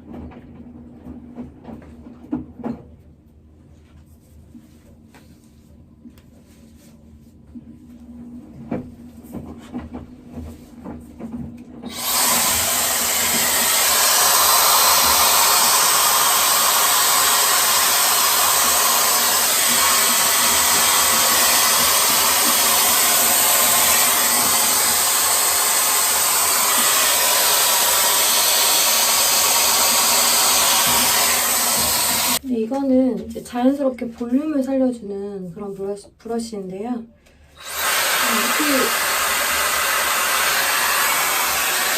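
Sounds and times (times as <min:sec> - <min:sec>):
hot-air styler blowing: 0:11.8 - 0:32.4, 0:37.6 - 0:41.9.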